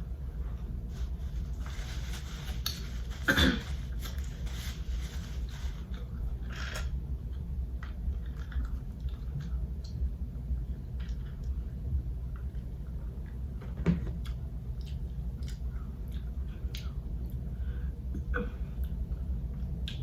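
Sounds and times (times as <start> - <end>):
steady low hum: 0.0 - 20.0
person chewing food: 7.3 - 10.0, 14.2 - 17.5.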